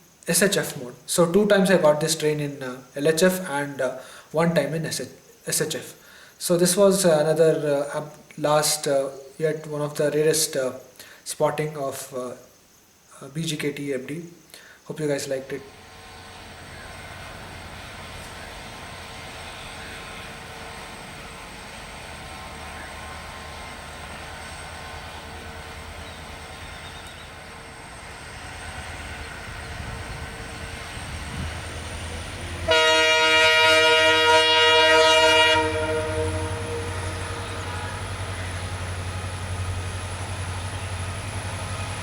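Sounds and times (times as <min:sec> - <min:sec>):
diesel locomotive engine rumble: 0:15.6 - 0:42.0
multi-tone train horn: 0:32.3 - 0:39.1.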